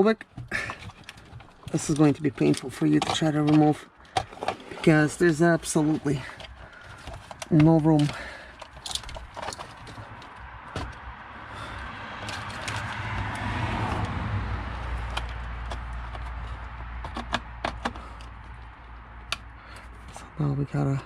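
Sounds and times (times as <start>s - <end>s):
parts clicking and knocking: 0.0s - 20.2s
vehicle passing: 9.8s - 21.0s.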